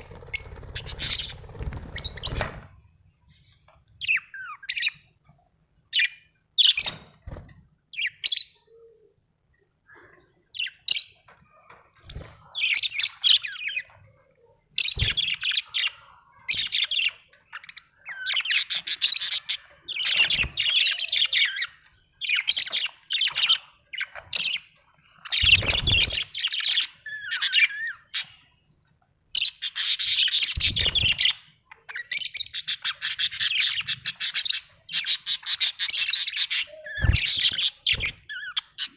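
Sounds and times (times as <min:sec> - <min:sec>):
budgerigars chirping: 0:00.0 - 0:02.7, 0:14.8 - 0:28.5, 0:29.4 - 0:38.9.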